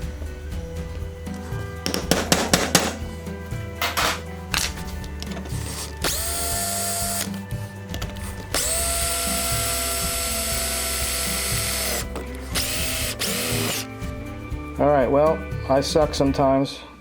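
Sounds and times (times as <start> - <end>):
power drill boring through metal: 5.6 - 7.4, 8.5 - 13.9.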